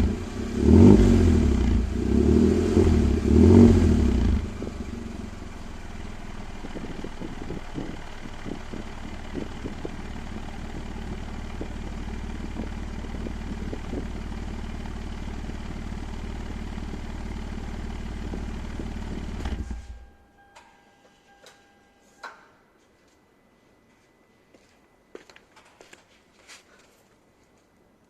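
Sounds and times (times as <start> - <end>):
car engine idling: 0.0 - 20.2
faint high tone: 19.8 - 22.6.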